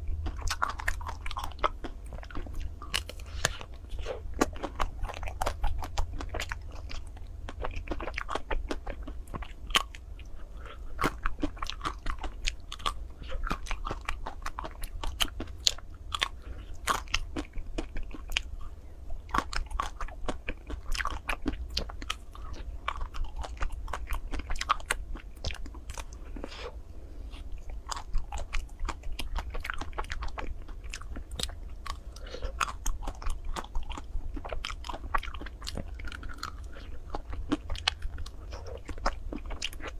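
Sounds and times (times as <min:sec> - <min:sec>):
chewing: 0:00.0 - 0:39.9.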